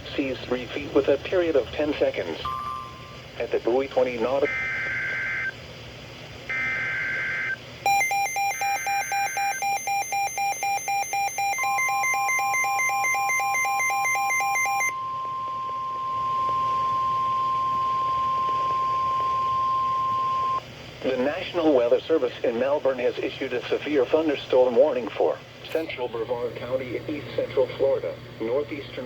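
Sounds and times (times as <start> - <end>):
pulsing electronic alarm: 6.5 - 20.6
steady warning alarm tone: 6.5 - 20.6.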